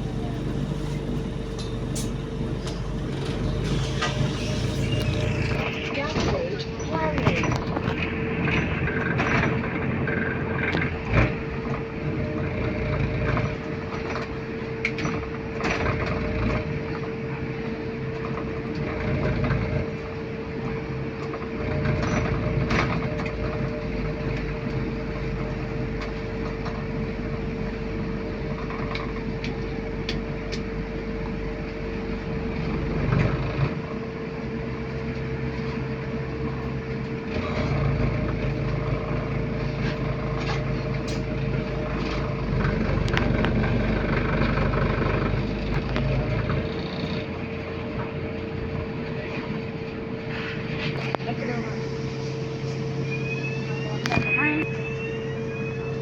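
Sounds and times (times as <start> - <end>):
steady whine: 0.0 - 13.1, 39.6 - 56.0
bus engine drone: 0.0 - 56.0
bus interior rattles and clicks: 0.0 - 56.0.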